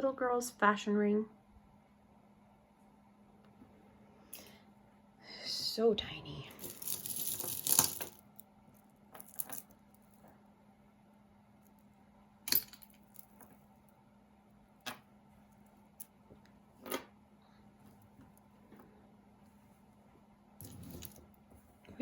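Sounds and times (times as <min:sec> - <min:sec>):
jewelry clinking and jangling: 0:06.5 - 0:10.3, 0:12.5 - 0:13.6, 0:20.6 - 0:21.3.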